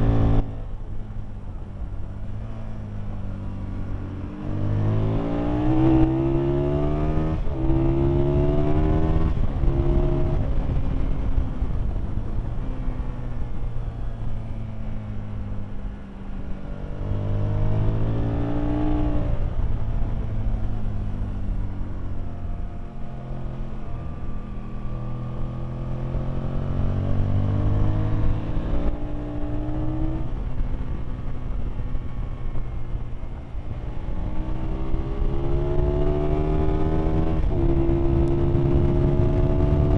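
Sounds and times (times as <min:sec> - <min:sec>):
motorcycle engine revving: 0:02.3 - 0:12.6, 0:22.3 - 0:39.9.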